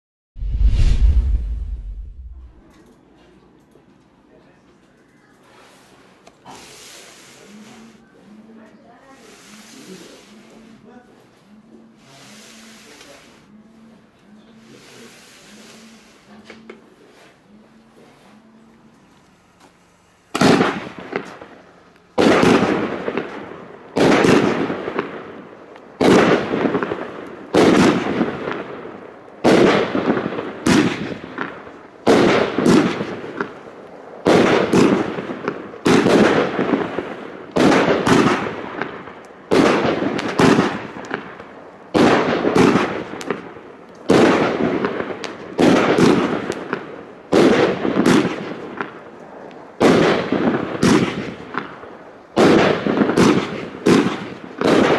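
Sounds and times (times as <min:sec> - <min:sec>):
firework shots bursting: 0:20.3 - 0:21.6, 0:22.2 - 0:49.2, 0:49.8 - 0:54.9.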